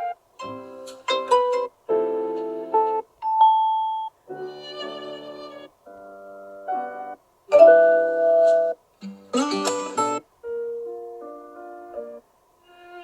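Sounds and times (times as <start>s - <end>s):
ringtone melodic snippets: 3.2s - 5.5s, 6.7s - 10.9s.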